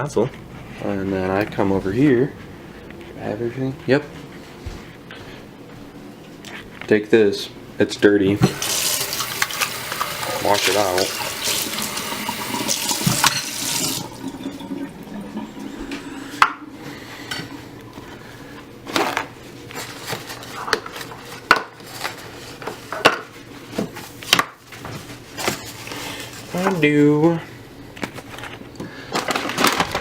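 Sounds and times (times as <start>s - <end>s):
kitchen tap running: 8.4s - 17.7s
dishes clinking and knocking: 12.5s - 16.7s.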